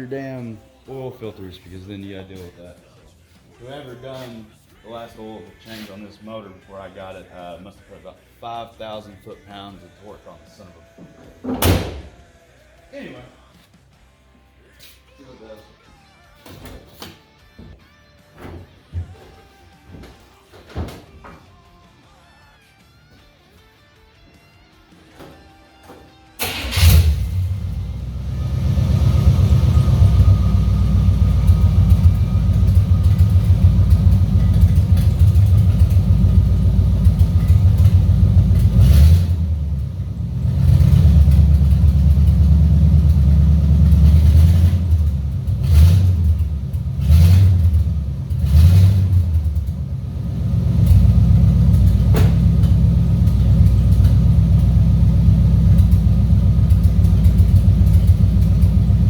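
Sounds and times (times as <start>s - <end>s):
truck engine rumbling: 26.4s - 59.0s.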